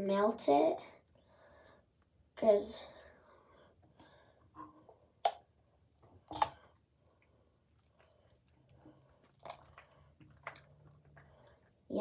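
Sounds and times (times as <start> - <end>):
slime squishing and squelching: 7.7 - 12.0.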